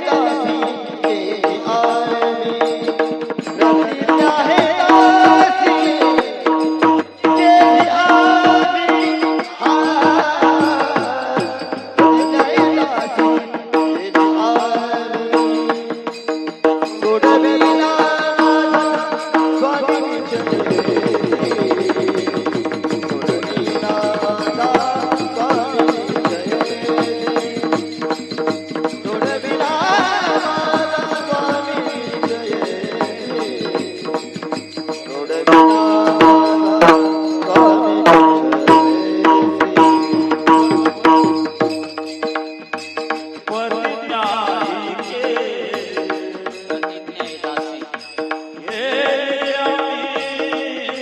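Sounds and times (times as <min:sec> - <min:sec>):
hand drum strokes: 0:19.1 - 0:46.2.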